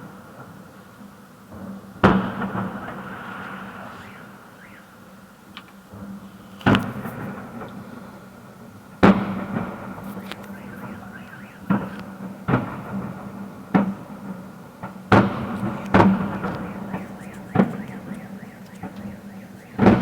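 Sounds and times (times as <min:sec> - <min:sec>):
fireworks booming: 0:02.0 - 0:05.0, 0:09.0 - 0:20.0
steady droning tone: 0:10.1 - 0:12.1, 0:15.4 - 0:20.0.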